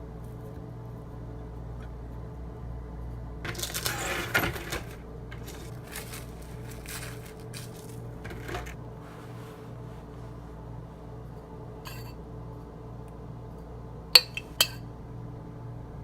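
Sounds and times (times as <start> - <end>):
steady low hum: 0.0 - 16.0
rustling and crinkling: 3.5 - 10.4.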